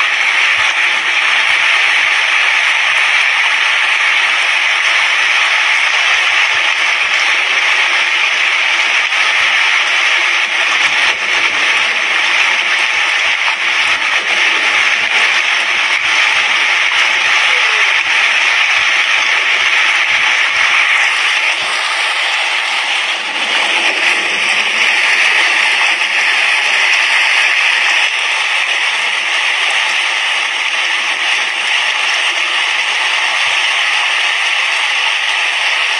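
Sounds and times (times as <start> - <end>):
heavy rain on a roof: 0.0 - 35.9.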